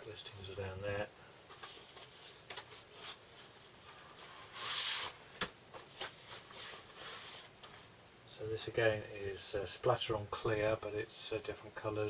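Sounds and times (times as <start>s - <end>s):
record sliding from sleeve: 4.2s - 5.2s.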